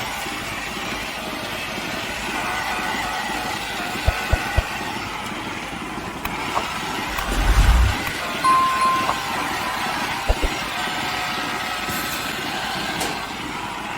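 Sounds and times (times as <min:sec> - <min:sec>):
low rumble: 0:07.1 - 0:08.2
low thumps: 0:07.1 - 0:08.2.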